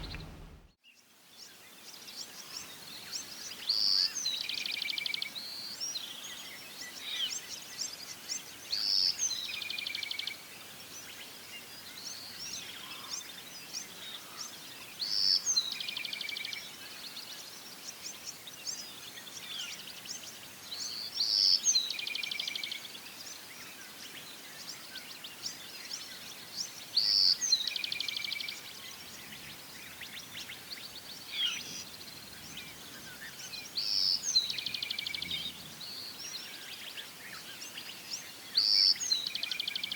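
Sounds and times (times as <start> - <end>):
soft background hiss: 0.0 - 2.0
birds chirping faintly: 0.0 - 4.2, 5.1 - 39.9
songbird singing trill: 15.0 - 39.9.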